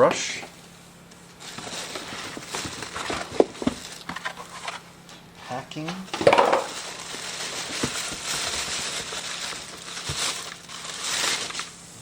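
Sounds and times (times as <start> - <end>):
packing material crinkling: 1.4 - 4.8, 6.2 - 11.8.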